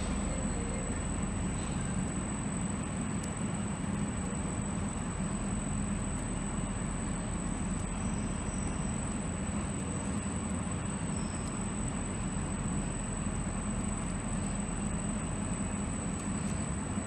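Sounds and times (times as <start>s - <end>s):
thin high-pitched whine: 0.0s - 3.4s
steady rumbling noise: 0.0s - 17.0s.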